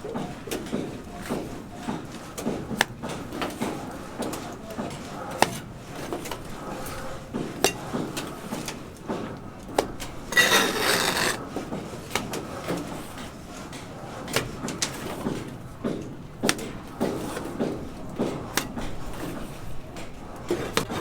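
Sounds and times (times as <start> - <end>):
scraping rasping noise: 10.3 - 11.4, 20.8 - 21.0.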